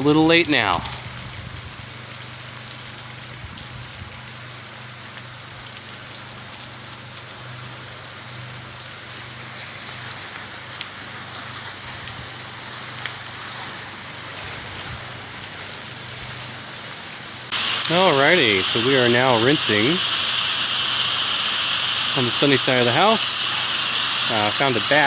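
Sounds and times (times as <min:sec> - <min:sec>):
pressure washer spray hissing: 0:17.5 - 0:25.0.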